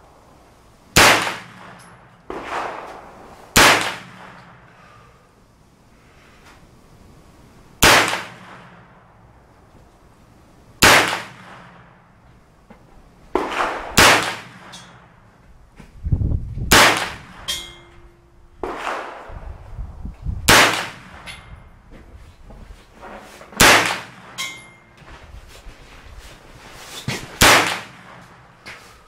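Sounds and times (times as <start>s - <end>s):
carbine gunshots with echo: 0.9s - 4.8s, 7.8s - 9.2s, 10.8s - 12.2s, 13.3s - 15.2s, 16.7s - 17.5s, 18.6s - 19.5s, 20.4s - 21.3s, 23.6s - 24.4s, 27.4s - 28.6s
fainter gunshots: 2.3s - 4.6s, 7.8s - 8.7s, 10.8s - 11.8s, 13.3s - 14.7s, 18.6s - 19.4s, 23.6s - 24.2s, 27.4s - 28.3s
metallic ring: 17.4s - 18.5s, 24.3s - 25.0s.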